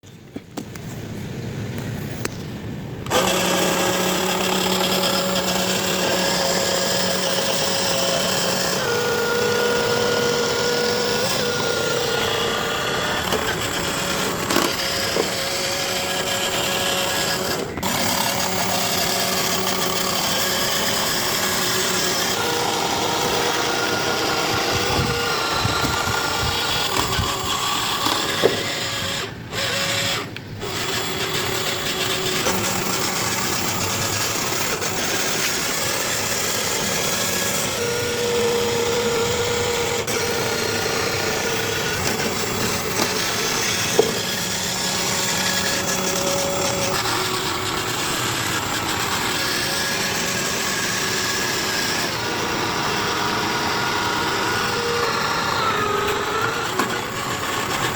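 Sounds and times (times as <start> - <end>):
handheld power tool running: 3.0 - 57.9.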